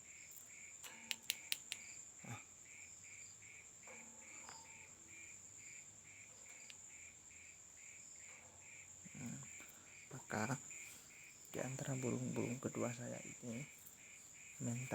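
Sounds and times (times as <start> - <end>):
crickets chirping: 0.0 - 14.9
bird beak clicks: 0.8 - 1.9.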